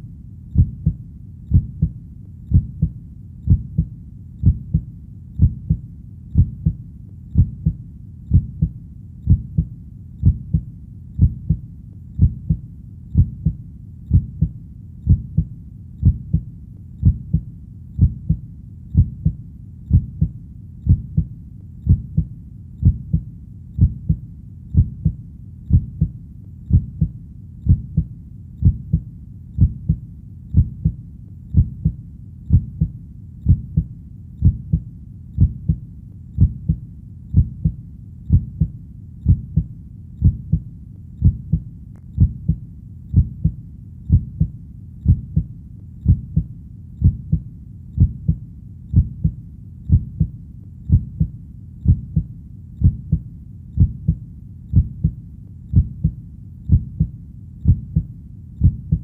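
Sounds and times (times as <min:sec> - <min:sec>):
heartbeat: 0:00.0 - 0:59.0.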